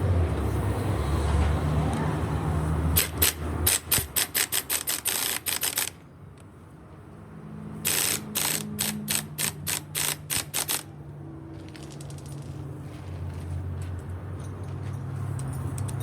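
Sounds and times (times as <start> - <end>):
ratchet wrench clicking: 3.0 - 6.0, 7.8 - 10.9.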